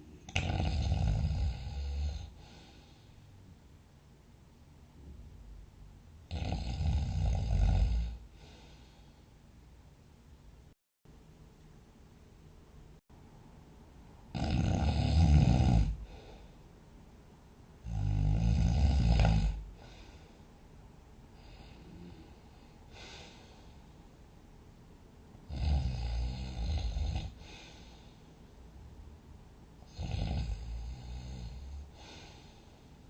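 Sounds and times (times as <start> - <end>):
person snoring heavily: 0.3 - 3.0, 6.3 - 8.9, 14.3 - 16.4, 17.8 - 20.2, 25.5 - 28.1, 29.9 - 32.6
faint breathing: 1.8 - 3.5, 8.1 - 9.5, 16.0 - 16.8, 19.6 - 20.6, 21.3 - 24.2, 27.3 - 28.5, 30.5 - 33.0.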